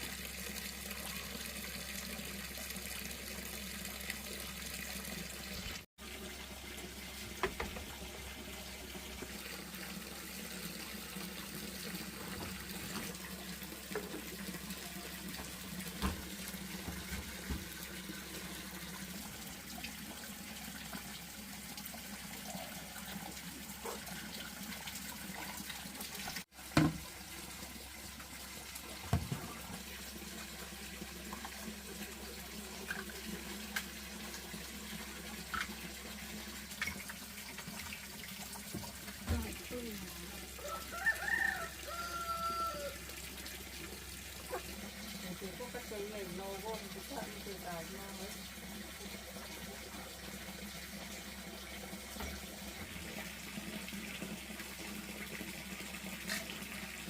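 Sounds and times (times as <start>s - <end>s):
water running: 0.0s - 57.0s.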